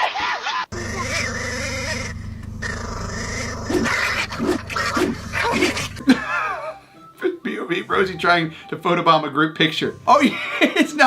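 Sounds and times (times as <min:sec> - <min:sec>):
dog vocalizing: 0:00.7 - 0:06.0
steady low hum: 0:00.7 - 0:06.0.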